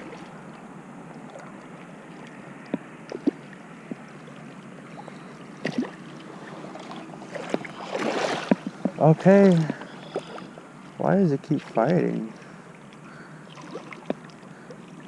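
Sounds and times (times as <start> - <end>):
river water running: 0.0 - 15.0
fish splashing at surface: 7.3 - 8.7.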